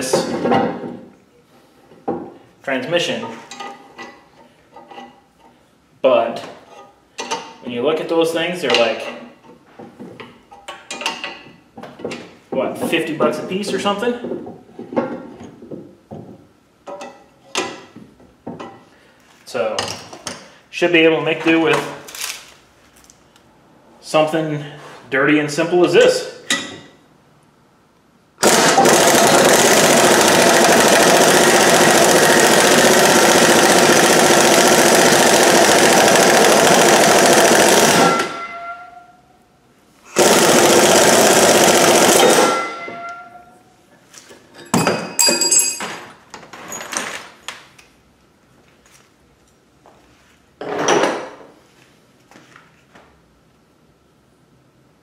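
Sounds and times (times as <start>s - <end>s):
metal clanks and clicks: 3.2s - 5.6s
impact wrench hammering: 28.4s - 38.8s, 40.2s - 43.3s.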